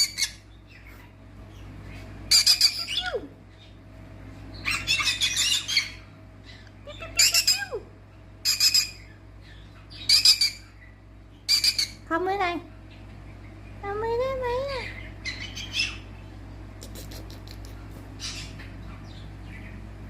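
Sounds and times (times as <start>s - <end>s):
parrot squawking: 0.0s - 1.0s, 2.3s - 3.3s, 4.6s - 7.8s, 8.4s - 10.9s, 11.5s - 12.1s, 14.8s - 16.2s, 16.8s - 19.7s.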